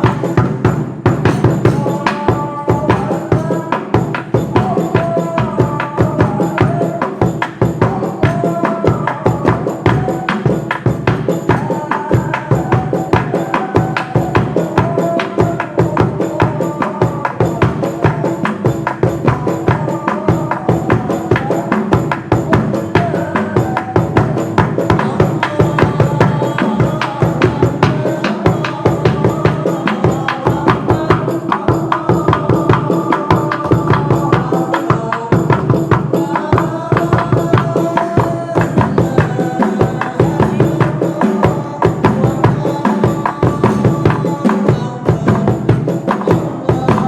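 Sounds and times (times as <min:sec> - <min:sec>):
drums: 0:00.0 - 0:47.0
tambourine-like jingles: 0:00.0 - 0:47.0.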